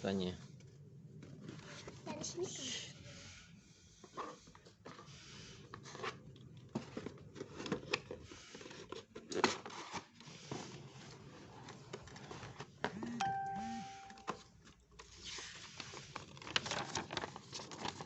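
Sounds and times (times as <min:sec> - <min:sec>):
steady tone: 0:13.1 - 0:14.3
packaging tearing and rustling: 0:15.1 - 0:18.0.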